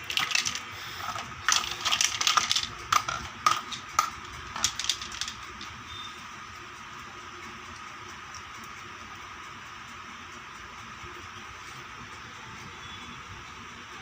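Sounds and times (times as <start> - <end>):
packaging rustling: 0.0 - 4.0
plastic toy pieces clicking: 0.0 - 5.8.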